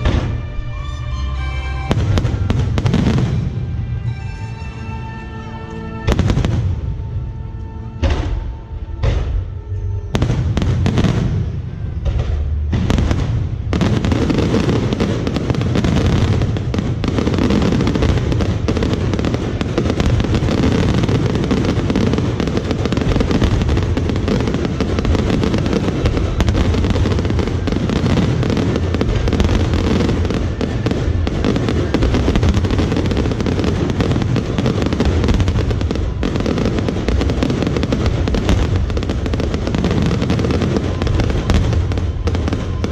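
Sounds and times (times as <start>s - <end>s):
fireworks bangs: 0.0s - 0.8s, 1.9s - 4.4s, 6.0s - 7.4s, 8.0s - 42.9s
rumble and crackle of fireworks: 0.0s - 4.9s, 5.5s - 42.9s.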